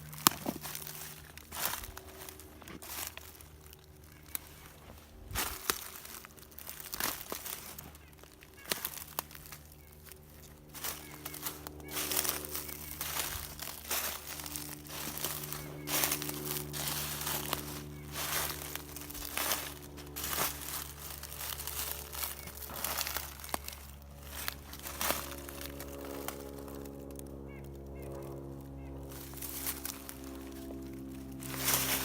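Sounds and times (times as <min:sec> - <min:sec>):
footsteps crunching through leaves: 0:00.0 - 0:32.0
low hum: 0:00.0 - 0:32.0.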